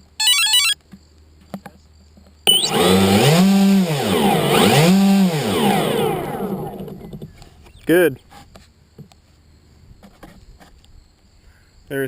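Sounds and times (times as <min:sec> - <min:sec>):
model aircraft motor buzzing: 0:02.5 - 0:07.3.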